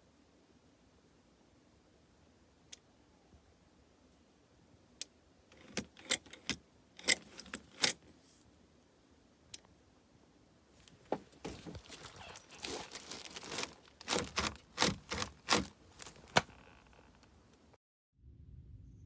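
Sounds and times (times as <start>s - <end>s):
metal hardware clicking and rattling: 5.6s - 8.0s.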